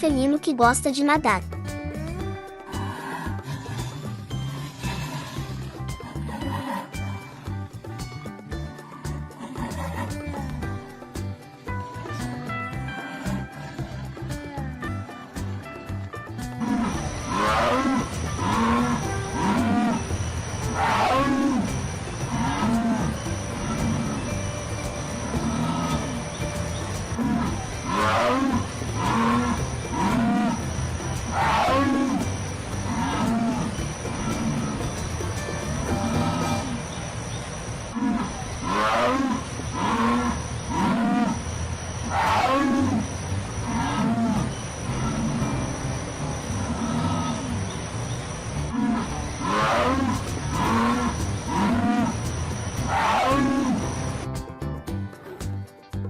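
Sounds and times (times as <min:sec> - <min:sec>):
jaguar calling: 0:12.4 - 0:54.4.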